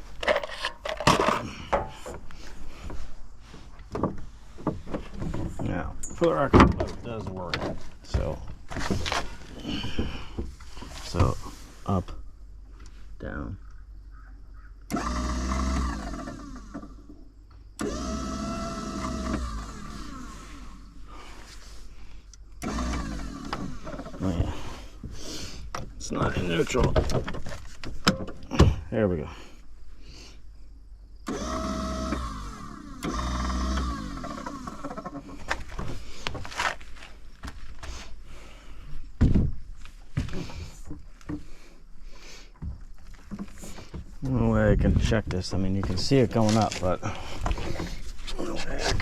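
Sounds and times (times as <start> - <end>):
small electric motor whining: 14.9 - 21.3, 22.5 - 24.8, 31.2 - 35.7.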